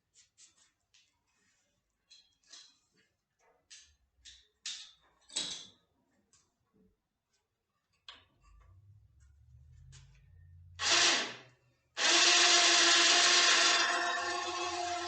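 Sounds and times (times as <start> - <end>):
electric winch motor humming: 12.0 - 15.0.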